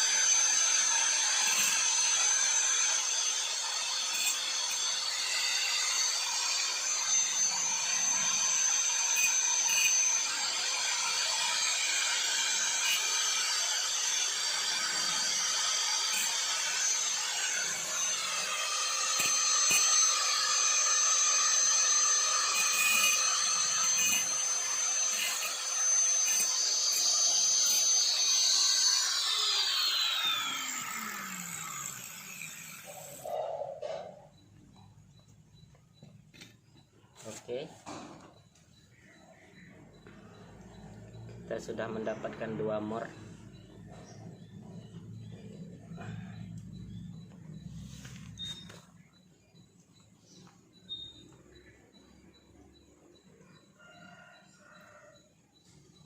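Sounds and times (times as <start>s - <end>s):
motor whine spinning down: 0.0s - 33.3s, 38.2s - 56.0s
power tool grinding: 0.0s - 34.8s, 39.9s - 49.0s.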